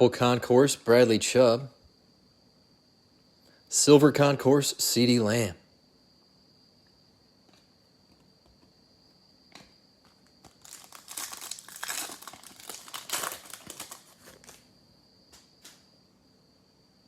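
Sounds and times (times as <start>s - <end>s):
foil wrapper tearing and crinkling: 10.4s - 14.7s.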